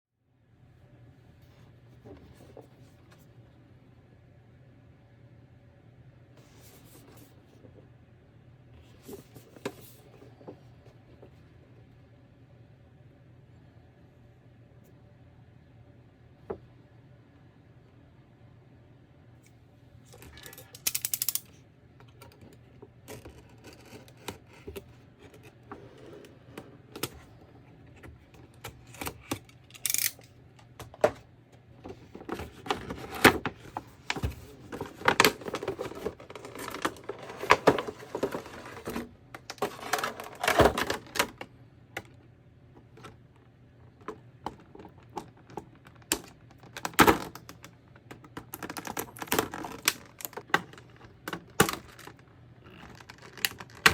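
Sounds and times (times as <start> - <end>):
cardboard and plastic packaging rustling: 30.7 - 41.4, 48.2 - 53.9.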